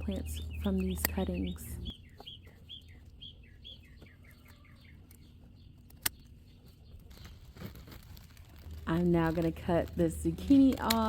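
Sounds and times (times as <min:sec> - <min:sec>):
bird chirping: 0:00.0 - 0:07.7.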